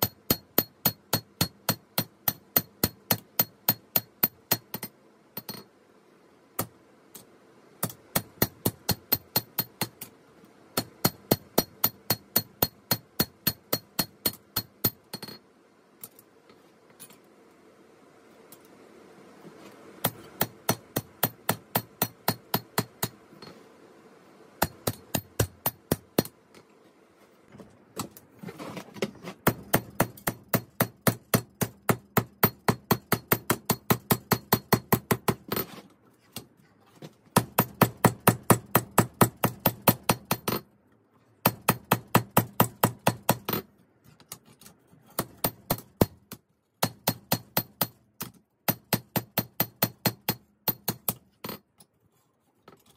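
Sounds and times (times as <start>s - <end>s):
hammer striking steel on an anvil: 10.8s - 15.4s.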